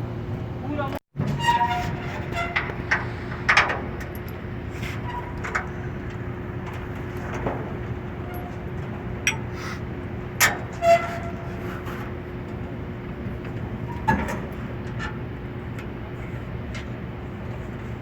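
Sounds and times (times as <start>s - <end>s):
steady background hum: 0.0s - 18.0s
metal knocks and clanks: 1.2s - 9.6s.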